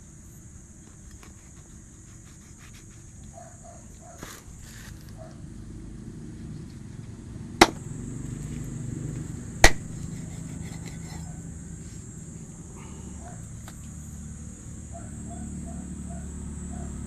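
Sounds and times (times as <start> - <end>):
sharp loud knocks: 7.6 - 7.8, 9.6 - 10.0.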